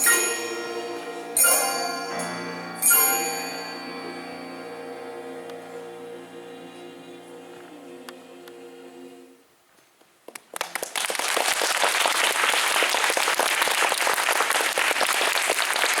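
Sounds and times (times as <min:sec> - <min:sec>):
choir singing final chord: 0:00.0 - 0:09.4
audience applause: 0:10.3 - 0:16.0.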